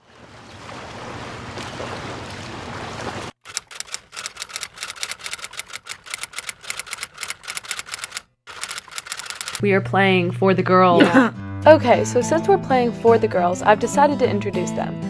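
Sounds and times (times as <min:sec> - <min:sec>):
fast irregular sharp clicks: 0:03.4 - 0:09.6.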